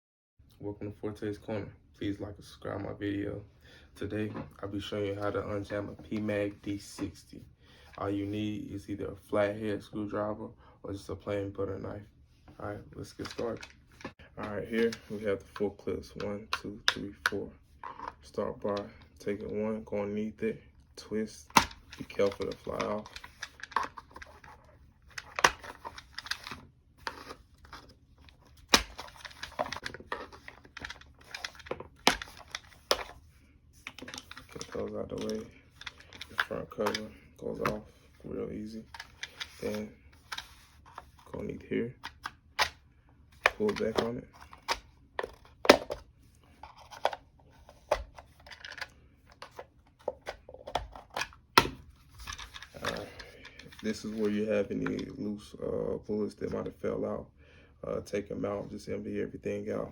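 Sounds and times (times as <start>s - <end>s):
plastic parts clicking and rattling: 21.5s - 33.2s, 33.8s - 37.8s, 38.9s - 41.2s, 46.6s - 55.1s.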